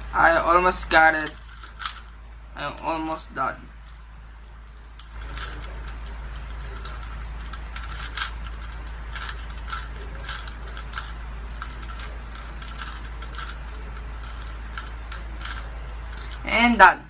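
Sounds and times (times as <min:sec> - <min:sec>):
steady low hum: 0:00.0 - 0:17.0
puzzle cube layers clicking: 0:05.0 - 0:16.4.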